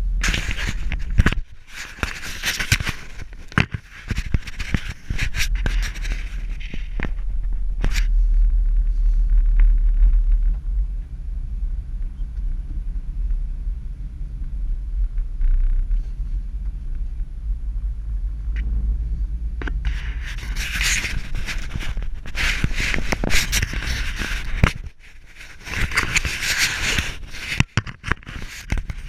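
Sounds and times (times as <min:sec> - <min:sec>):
crackling and scraping clicks: 0:00.2 - 0:11.1, 0:19.6 - 0:29.0
pickup truck rumbling: 0:06.2 - 0:24.6.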